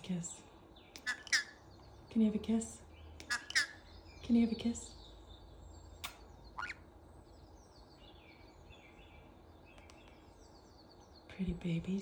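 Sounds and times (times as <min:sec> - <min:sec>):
faint bird chirping: 0:00.0 - 0:12.0
pet bird sharp calls: 0:00.9 - 0:01.6, 0:03.2 - 0:03.8.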